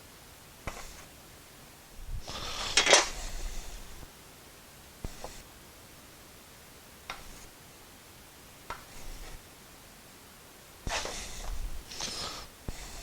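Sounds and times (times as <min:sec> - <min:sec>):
pencil scratching on plywood: 0:00.7 - 0:01.1, 0:05.0 - 0:05.5, 0:07.1 - 0:07.6, 0:08.7 - 0:09.4, 0:10.9 - 0:13.0.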